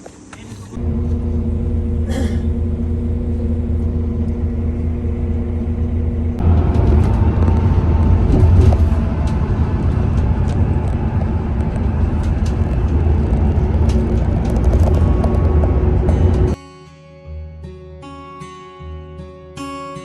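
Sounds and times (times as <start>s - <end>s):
road vehicle rumble: 0.7s - 16.6s.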